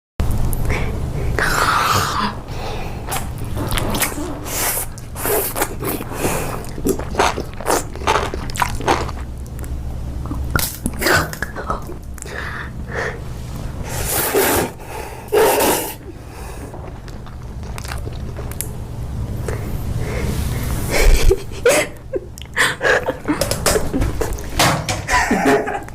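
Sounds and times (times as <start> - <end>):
crunchy chewing: 3.1 - 12.3, 16.6 - 19.7.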